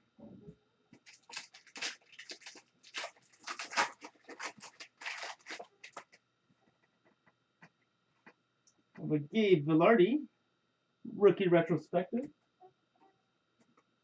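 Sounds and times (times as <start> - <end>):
foil wrappers crinkling: 1.0 - 6.2.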